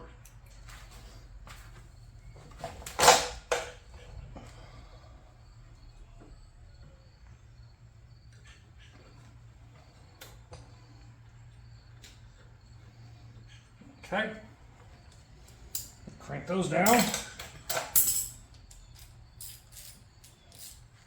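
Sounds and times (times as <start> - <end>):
hand tools clattering: 16.6 - 18.4
tools clicking and tapping: 16.8 - 20.8.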